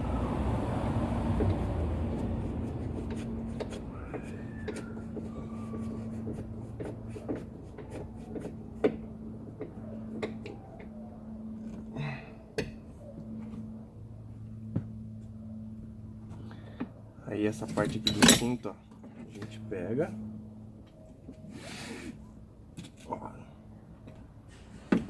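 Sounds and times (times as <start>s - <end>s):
steady low hum: 0.0s - 17.6s.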